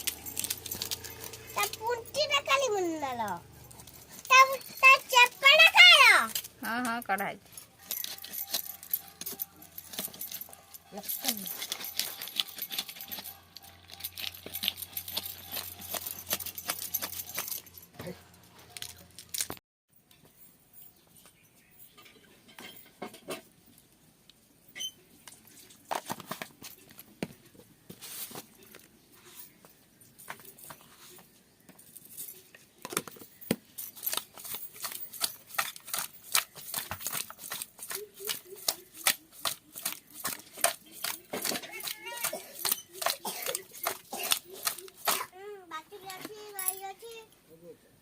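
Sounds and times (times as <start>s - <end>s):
light metallic clinks and jingling: 0.0s - 23.5s, 45.8s - 47.3s.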